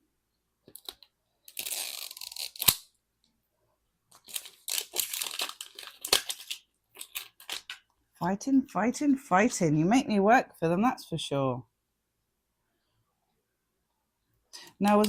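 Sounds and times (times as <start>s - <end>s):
wrapping tearing and crinkling: 0.8s - 2.9s, 4.1s - 7.8s.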